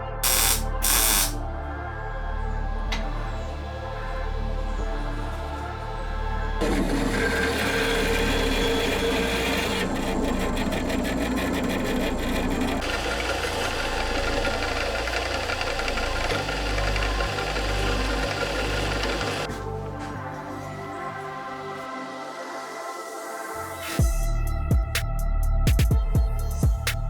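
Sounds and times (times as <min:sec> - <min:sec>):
power tool working material: 0:00.0 - 0:01.4, 0:02.9 - 0:20.1
background music with bass line: 0:00.0 - 0:10.1, 0:15.3 - 0:27.0.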